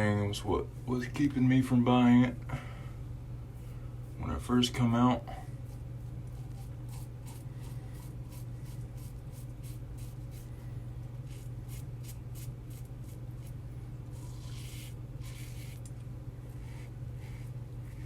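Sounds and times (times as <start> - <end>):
razor scraping lathered stubble: 5.6 - 10.5, 11.2 - 15.9, 16.5 - 18.0.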